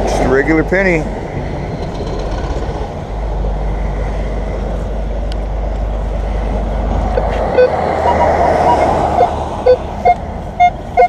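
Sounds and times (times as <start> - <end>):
steady low rumbling: 0.0 - 11.0
metal detector beep: 7.5 - 11.0.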